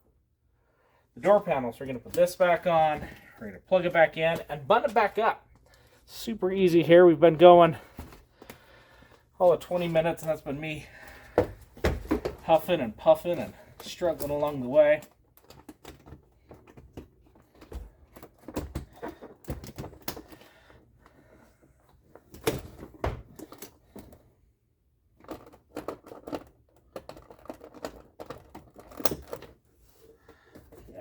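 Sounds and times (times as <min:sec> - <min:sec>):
plastic parts clicking and knocking: 0:11.0 - 0:24.4, 0:25.0 - 0:29.7, 0:30.3 - 0:31.0.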